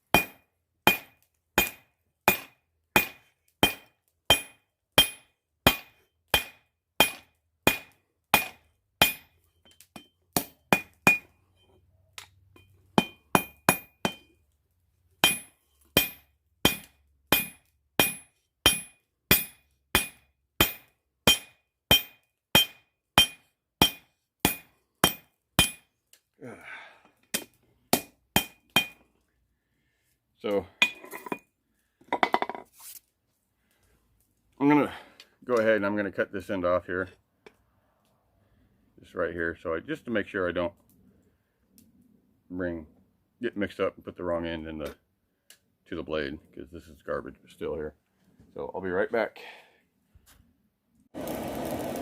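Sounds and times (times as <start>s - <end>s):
hammer on hot steel ringing: 0.1s - 11.3s, 13.0s - 14.3s, 15.2s - 25.9s, 27.4s - 29.0s.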